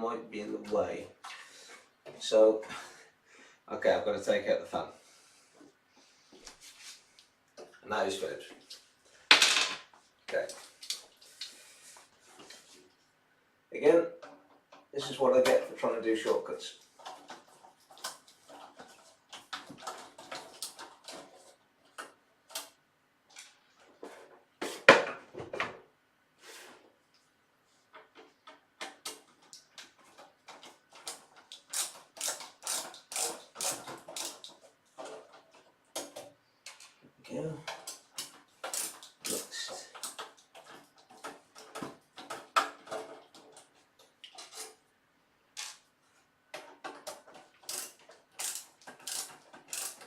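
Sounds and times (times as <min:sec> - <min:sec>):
screwdriver and metal parts clicking: 0:30.5 - 0:35.4, 0:37.7 - 0:43.7, 0:46.8 - 0:50.0.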